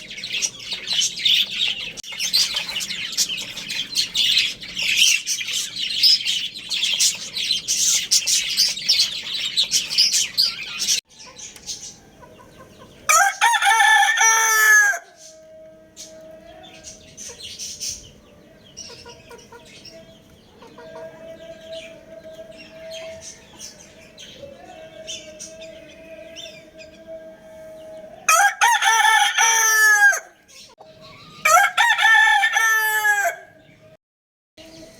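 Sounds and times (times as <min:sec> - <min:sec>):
small birds chirping: 0:00.0 - 0:13.1, 0:15.0 - 0:28.3, 0:30.3 - 0:31.4
rooster crowing: 0:13.1 - 0:17.1, 0:20.8 - 0:30.4, 0:31.3 - 0:33.6.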